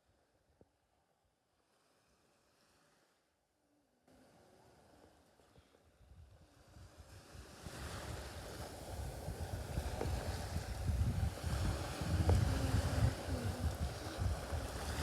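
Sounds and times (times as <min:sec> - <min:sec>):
wind buffeting microphone: 0:06.0 - 0:15.0
sea surf: 0:06.4 - 0:15.0.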